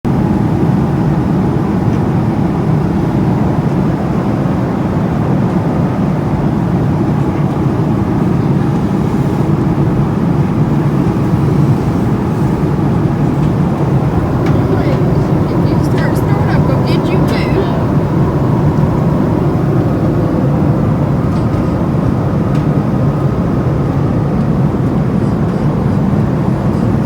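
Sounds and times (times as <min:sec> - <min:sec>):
airliner cabin drone: 0:00.1 - 0:27.0.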